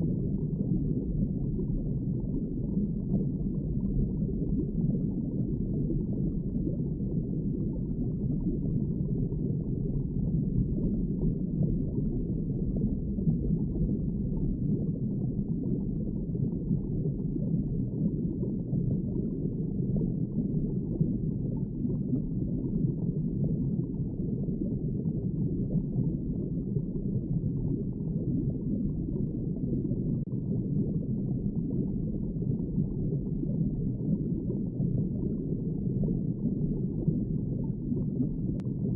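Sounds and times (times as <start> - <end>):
muffled underwater rush: 0.0 - 38.9.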